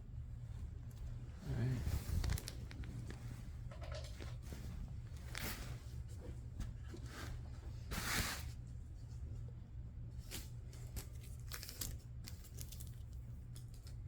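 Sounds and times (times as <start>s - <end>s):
steady low hum: 0.0s - 14.0s
packaging crinkling and rustling: 2.0s - 3.3s, 10.2s - 14.0s
packaging tearing: 11.0s - 13.9s.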